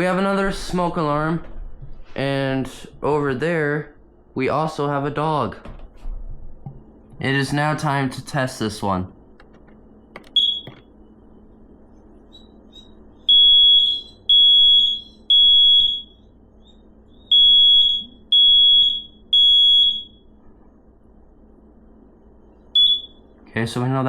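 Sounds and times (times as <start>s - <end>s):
smoke alarm beeps: 10.3s - 10.9s, 12.2s - 20.3s, 22.8s - 23.4s.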